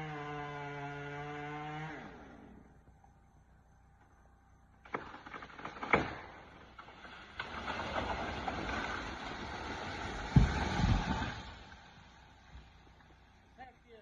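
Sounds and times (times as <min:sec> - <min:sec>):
tree cracking: 0:04.8 - 0:13.2
wood thudding on ground: 0:04.9 - 0:09.1, 0:10.2 - 0:11.4
branches breaking: 0:04.9 - 0:12.0.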